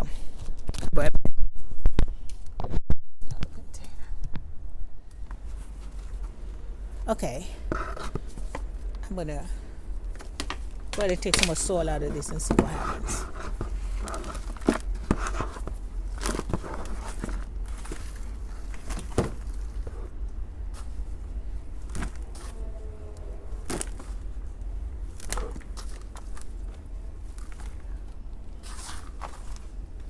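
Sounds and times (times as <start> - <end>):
steady low rumble: 0.0 - 30.0
scraping and crunching soil: 10.2 - 20.1, 25.0 - 29.8.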